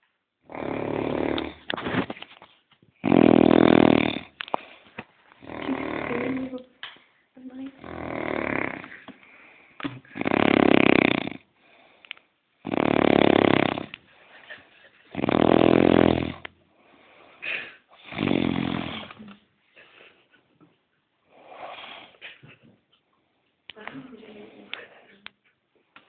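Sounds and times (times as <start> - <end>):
man snoring loudly: 0.5 - 1.6, 3.0 - 4.3, 5.4 - 6.5, 7.8 - 9.0, 10.0 - 11.5, 12.6 - 14.0, 15.1 - 16.4, 18.0 - 19.2.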